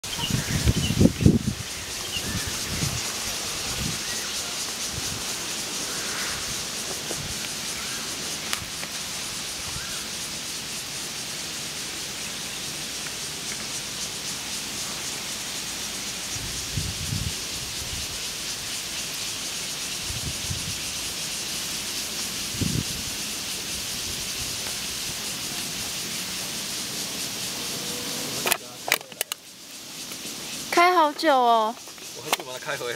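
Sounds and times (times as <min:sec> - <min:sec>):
wind gusts buffeting microphone: 0:00.0 - 0:07.8, 0:16.3 - 0:18.2, 0:20.0 - 0:21.0, 0:22.4 - 0:26.0
wind hiss: 0:00.0 - 0:32.9.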